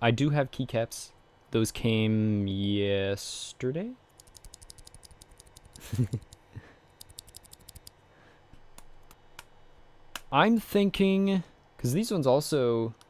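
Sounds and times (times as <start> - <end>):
mechanical keyboard clicks: 4.2 - 6.4, 7.0 - 7.9.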